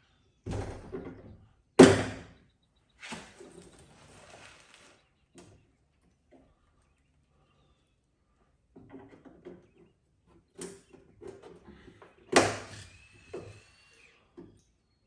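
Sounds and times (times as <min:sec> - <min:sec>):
knocks and clunks: 0:00.5 - 0:02.4.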